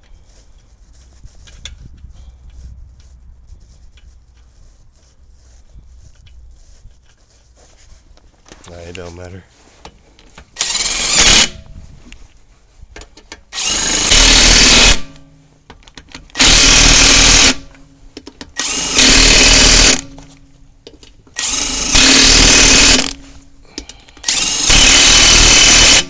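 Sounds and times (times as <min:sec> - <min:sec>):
impact wrench bursts: 0:10.6 - 0:11.6, 0:13.5 - 0:15.2, 0:16.3 - 0:17.7, 0:18.5 - 0:20.2, 0:21.4 - 0:26.0.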